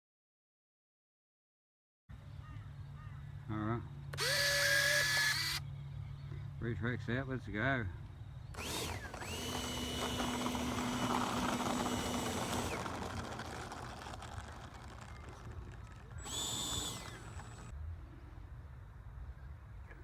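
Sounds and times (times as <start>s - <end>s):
model jet fan whining: 4.1s - 5.6s, 8.5s - 17.7s.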